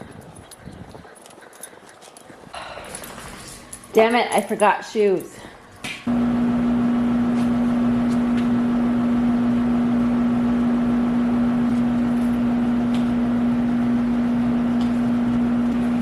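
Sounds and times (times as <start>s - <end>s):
machine hum: 5.4s - 16.0s.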